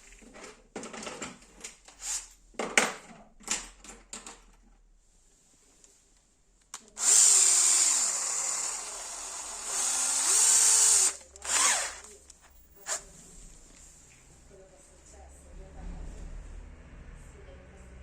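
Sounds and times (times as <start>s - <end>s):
power drill running: 7.0s - 12.1s, 12.8s - 13.0s.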